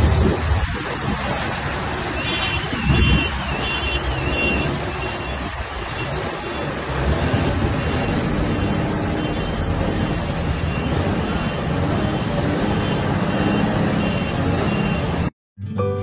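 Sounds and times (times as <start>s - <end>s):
loud rushing noise: 0.0s - 15.3s
short high tones: 15.6s - 16.0s.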